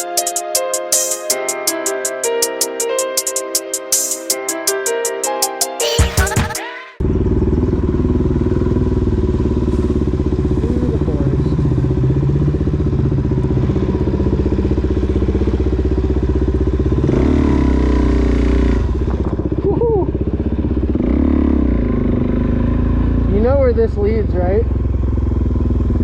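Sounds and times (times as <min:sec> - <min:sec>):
music: 0:00.0 - 0:07.0
dirt bike engine running: 0:06.3 - 0:26.0.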